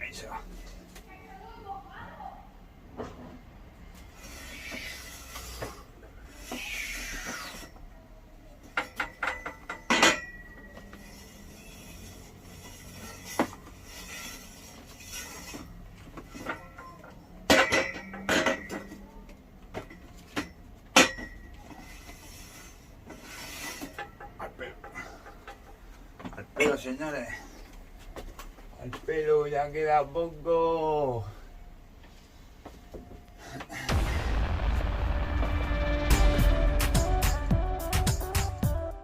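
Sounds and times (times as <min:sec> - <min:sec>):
metal scrapes: 0:04.0 - 0:07.8, 0:08.7 - 0:19.0, 0:21.0 - 0:25.3
metal clinks and knocks: 0:08.6 - 0:11.0, 0:15.5 - 0:21.8.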